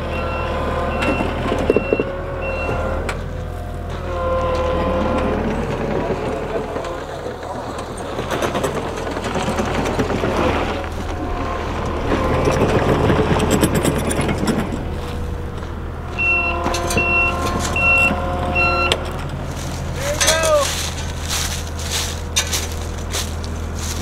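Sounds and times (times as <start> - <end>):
backup alarm beeps: 0.0 - 3.0, 16.1 - 19.0
skid steer engine hum and rattle: 0.0 - 24.0.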